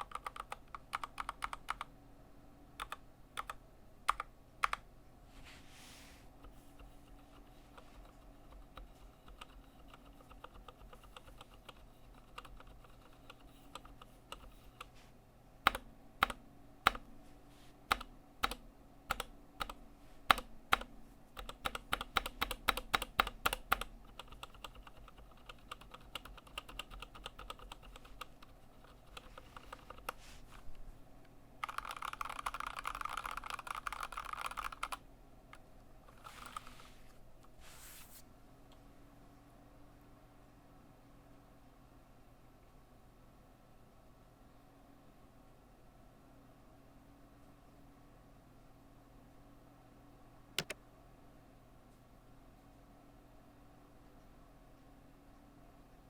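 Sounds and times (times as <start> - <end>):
mechanical keyboard typing: 0.0 - 1.9, 2.8 - 4.8, 6.8 - 14.9, 15.7 - 17.1, 17.9 - 30.2, 31.6 - 35.0.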